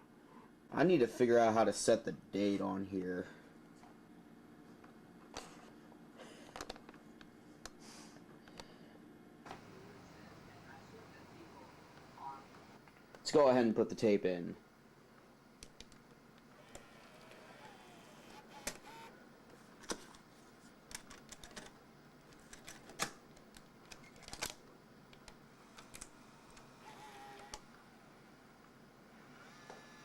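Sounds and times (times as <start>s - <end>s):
faint whine: 9.5s - 13.4s
camcorder clicks and snaps: 18.6s - 19.1s.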